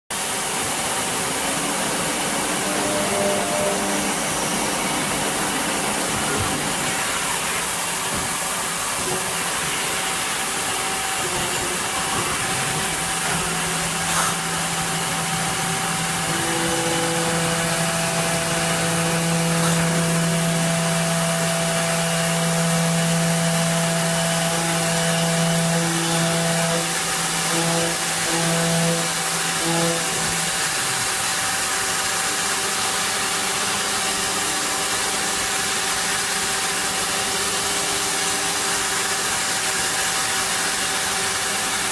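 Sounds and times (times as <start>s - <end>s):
steady machine hum: 0.1s - 41.9s
machine motors whining: 0.3s - 31.6s.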